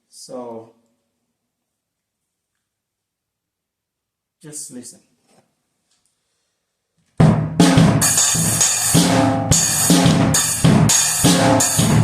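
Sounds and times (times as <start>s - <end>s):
drum kit beat: 7.2s - 12.0s.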